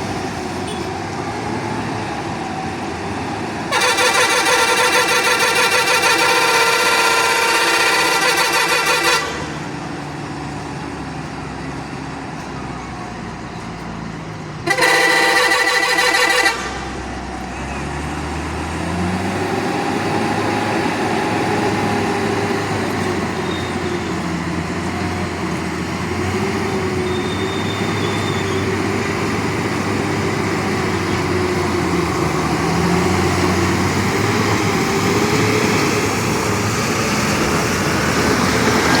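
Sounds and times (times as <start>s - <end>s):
road noise: 0.0s - 39.0s
truck engine running: 0.0s - 39.0s
vehicle horn blast: 0.6s - 0.9s, 3.7s - 9.7s, 14.6s - 17.0s.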